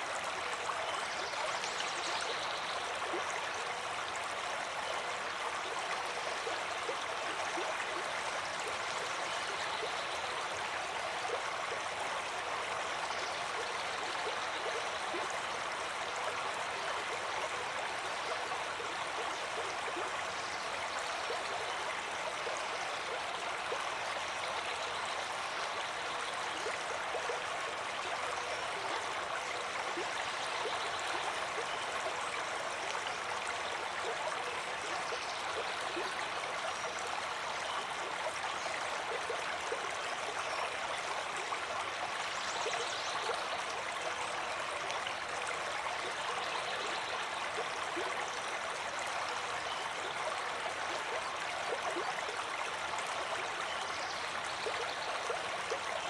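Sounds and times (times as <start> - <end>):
stream water flowing: 0.0 - 56.0.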